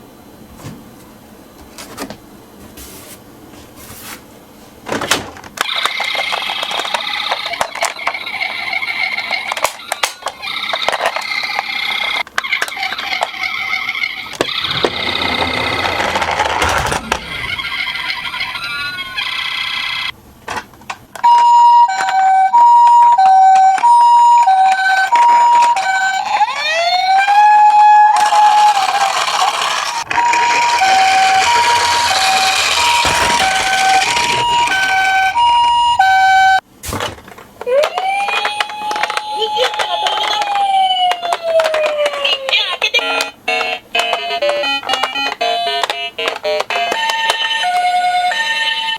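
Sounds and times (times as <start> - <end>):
toy electronic siren: 5.7 - 20.1, 21.2 - 36.6, 37.7 - 42.5
toy cars rumbling on a slope: 12.7 - 19.6, 25.2 - 36.2.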